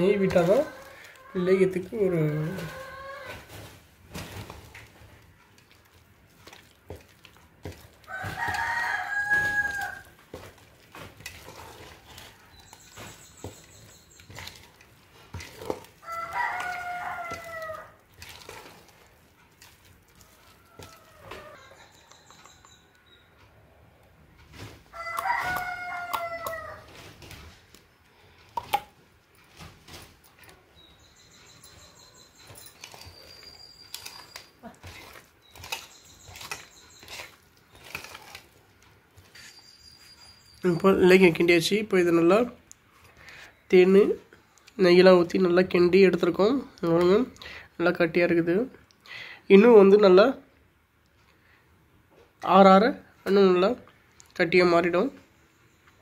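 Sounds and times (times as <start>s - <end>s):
rooster crowing: 8.1s - 10.1s, 16.0s - 18.0s, 20.2s - 22.8s, 24.9s - 27.0s.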